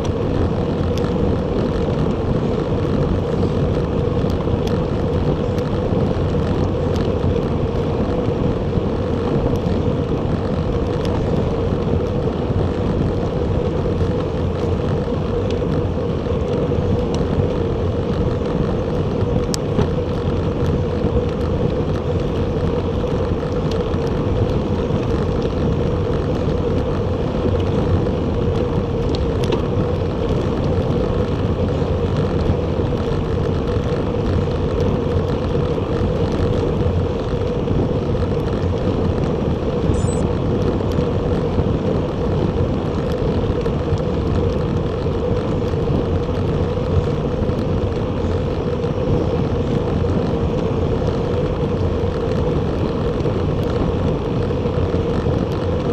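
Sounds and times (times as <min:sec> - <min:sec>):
bicycle tyres road noise: 0:00.0 - 0:55.9
constant hum: 0:00.0 - 0:55.9
wind buffeting microphone: 0:00.0 - 0:55.9.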